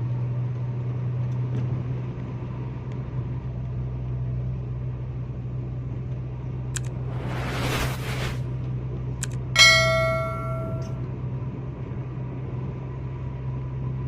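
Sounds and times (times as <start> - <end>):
metallic ringing strike: 9.6 - 11.0.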